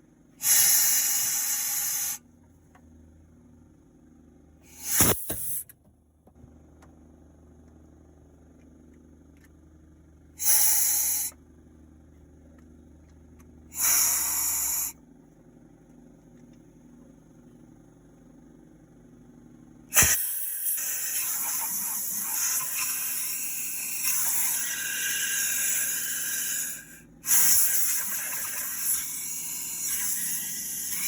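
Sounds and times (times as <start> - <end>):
spray-like hissing: 0.4 - 2.2, 13.8 - 14.9.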